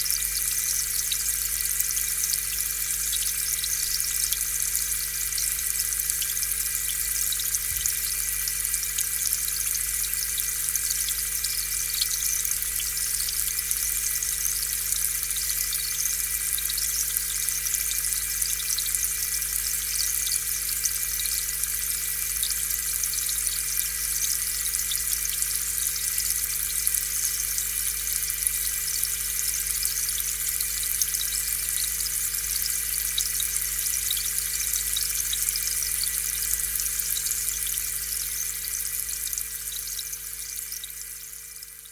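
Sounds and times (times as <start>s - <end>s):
air bubbles fizzing in water: 7.3s - 8.4s
air pump mechanical hum: 7.3s - 8.6s.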